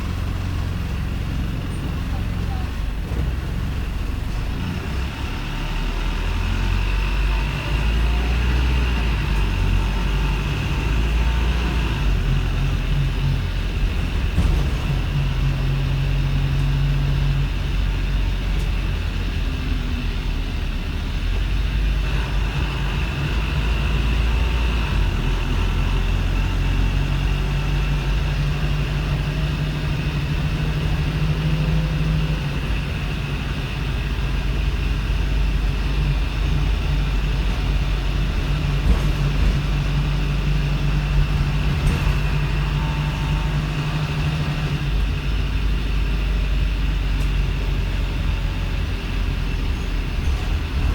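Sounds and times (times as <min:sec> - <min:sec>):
diesel bus engine idling roughly: 0:00.0 - 0:50.9.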